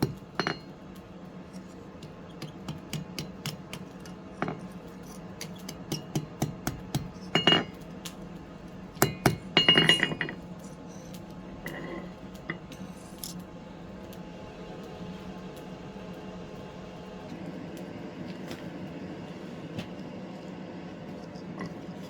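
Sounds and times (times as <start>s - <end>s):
steady low hum: 0.0s - 22.0s
metallic taps and clinks: 7.4s - 7.8s, 9.1s - 10.4s
ringing metal clatters: 9.1s - 10.4s.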